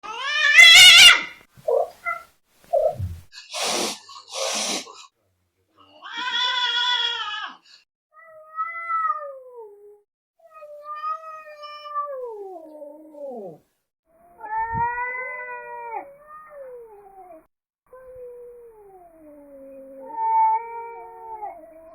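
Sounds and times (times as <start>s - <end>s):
cat yowling: 0.0s - 2.2s, 6.0s - 7.6s, 8.2s - 13.6s, 14.2s - 21.9s
cat hissing: 0.4s - 5.1s.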